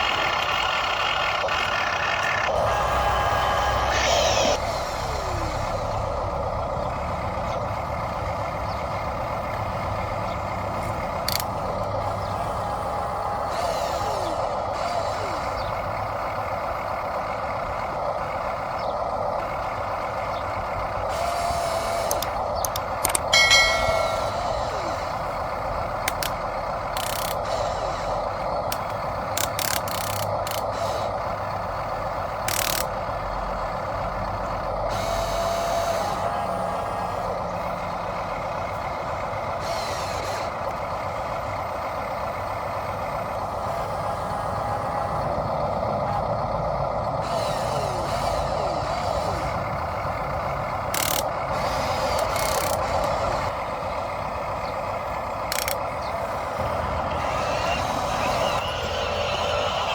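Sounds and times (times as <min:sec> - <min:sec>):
toy machines mechanical hum: 0:00.0 - 0:59.9
high beeping: 0:23.4 - 0:25.1.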